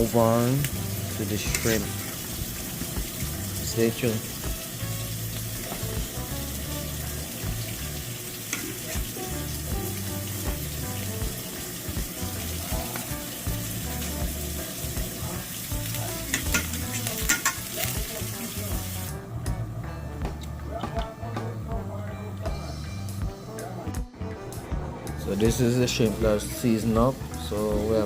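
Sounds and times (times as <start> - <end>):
food sizzling in hot oil: 0.0 - 19.2
oil popping and crackling: 0.4 - 19.2.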